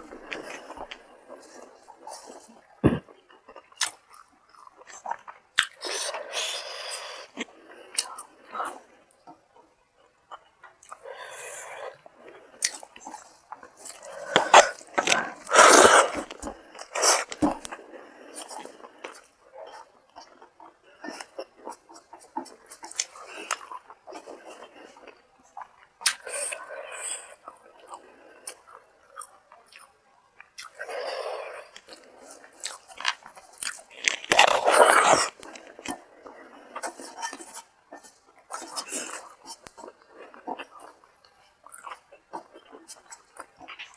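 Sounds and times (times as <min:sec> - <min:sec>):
person chewing and mouth smacking: 0:00.0 - 0:08.6, 0:12.6 - 0:17.8, 0:27.8 - 0:43.9.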